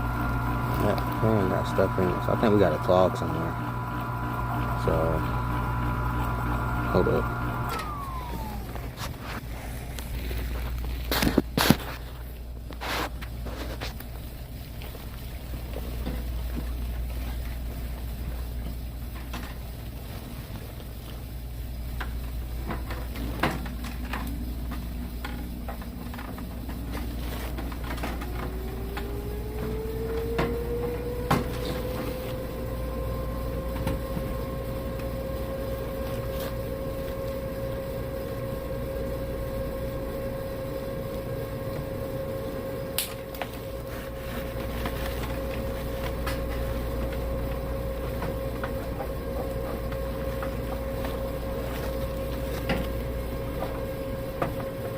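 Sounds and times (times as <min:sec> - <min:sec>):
electric motor whine: 0:00.0 - 0:09.4, 0:25.2 - 0:54.9.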